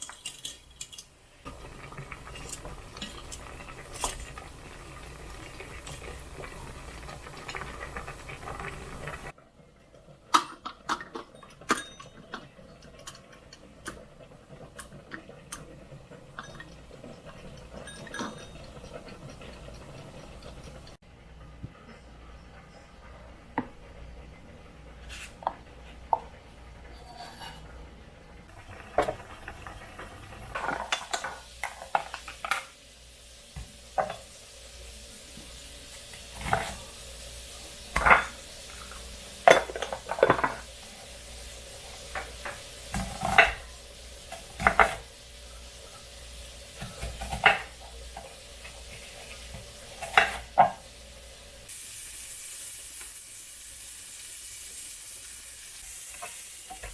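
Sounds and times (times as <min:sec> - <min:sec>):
utensils clinking against dishes: 0:00.0 - 0:01.2, 0:01.8 - 0:04.4, 0:10.4 - 0:14.0, 0:16.4 - 0:19.8, 0:38.0 - 0:40.7.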